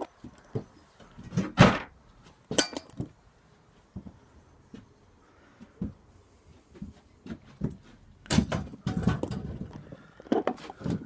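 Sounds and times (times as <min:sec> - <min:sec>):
objects knocking and clunking: 0:00.0 - 0:03.2, 0:06.7 - 0:11.0.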